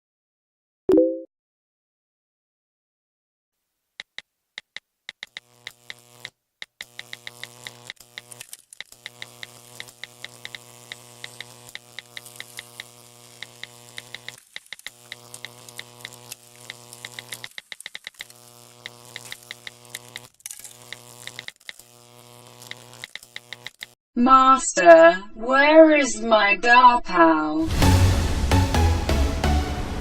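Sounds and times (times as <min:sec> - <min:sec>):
rapid irregular clicking: 0:04.0 - 0:24.0
low buzz: 0:05.2 - 0:24.0.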